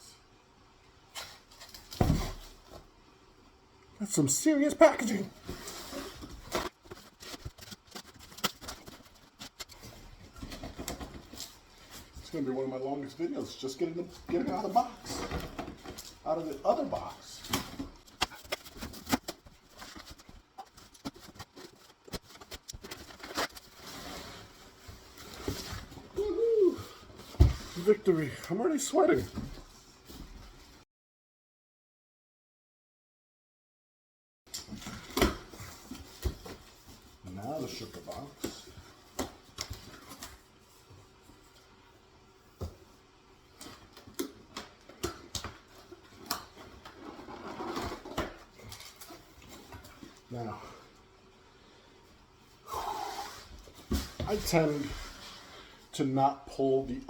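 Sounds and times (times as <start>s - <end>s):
cardboard knocks and scrapes: 1.8s - 2.8s
cardboard scraping and rustling: 5.0s - 12.2s, 13.8s - 26.2s, 45.0s - 50.2s.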